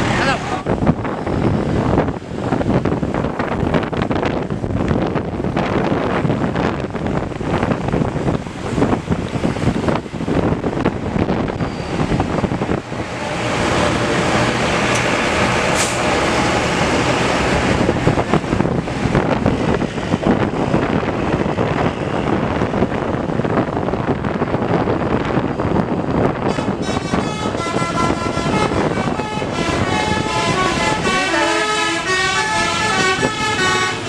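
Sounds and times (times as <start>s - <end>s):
passing vehicles traffic noise: 0.0s - 34.0s
large vehicle passing close: 7.8s - 23.0s.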